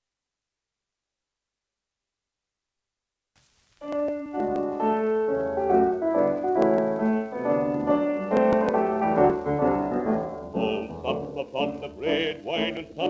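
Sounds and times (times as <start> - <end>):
record surface hiss: 3.2 - 13.0
piano playing on old record: 3.8 - 13.0.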